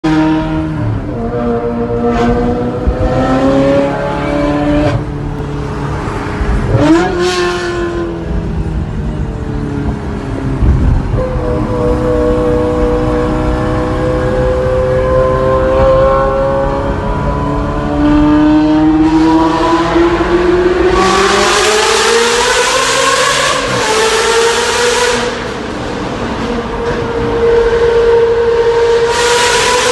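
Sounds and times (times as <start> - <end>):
vehicle engine revving in a tunnel: 6.6 - 8.3, 10.9 - 29.9.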